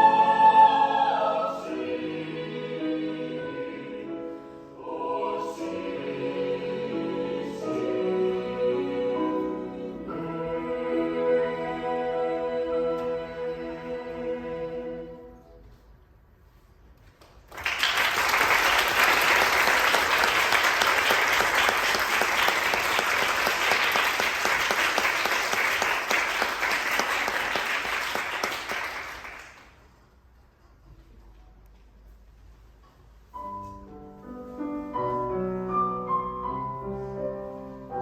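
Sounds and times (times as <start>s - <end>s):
choir holding a chord: 0.0s - 15.5s
audience applauding: 17.5s - 29.8s.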